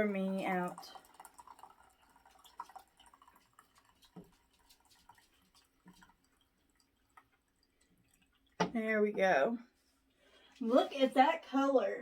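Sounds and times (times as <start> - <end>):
tea pouring into a cup: 0.0 - 8.6.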